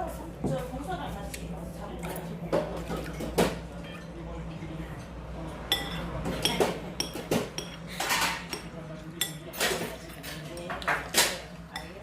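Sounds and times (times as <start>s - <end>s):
cutlery clinking against dishes: 5.7s - 12.0s.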